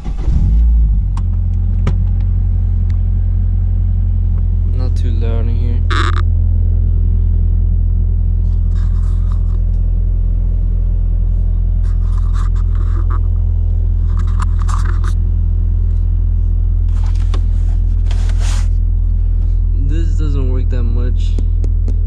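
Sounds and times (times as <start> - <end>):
short rasping scrapes: 5.9 - 6.2, 8.4 - 9.6, 11.8 - 13.3.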